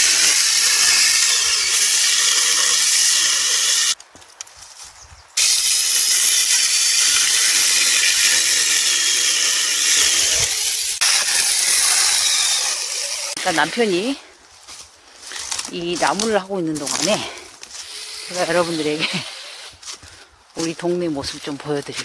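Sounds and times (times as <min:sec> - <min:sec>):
electric chainsaw whining: 0:00.0 - 0:04.0, 0:05.4 - 0:14.2, 0:17.8 - 0:19.8.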